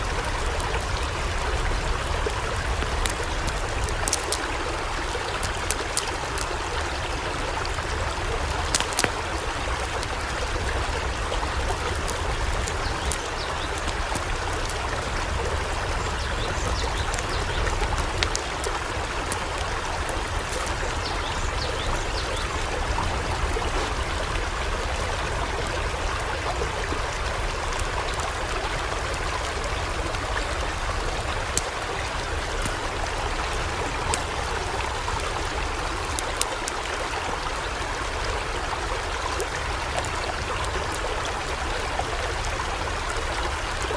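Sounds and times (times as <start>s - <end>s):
floodwater rushing: 0.0s - 43.9s
small ticks: 2.7s - 4.6s, 8.6s - 9.2s, 11.6s - 14.9s, 16.2s - 22.4s.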